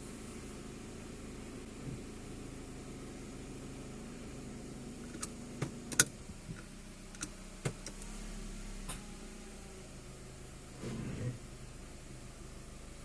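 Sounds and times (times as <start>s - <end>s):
car engine idling: 0.0s - 13.0s
sharp metallic drivetrain clicks: 5.0s - 8.1s.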